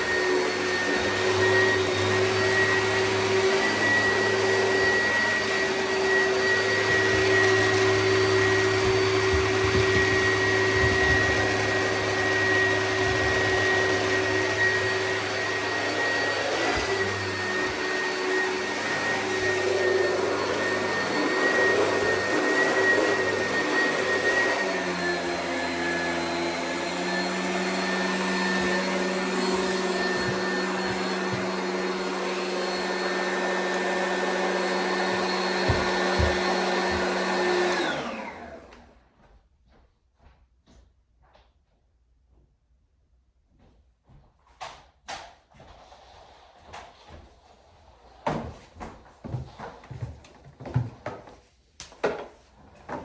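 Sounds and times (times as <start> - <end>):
vacuum cleaner motor whine: 0.0 - 39.1.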